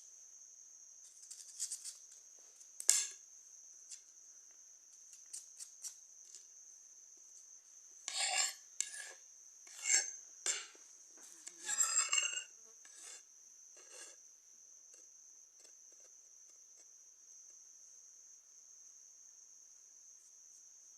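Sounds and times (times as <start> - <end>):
rasping scraping strokes: 8.1 - 10.6, 11.3 - 13.2, 13.8 - 14.2.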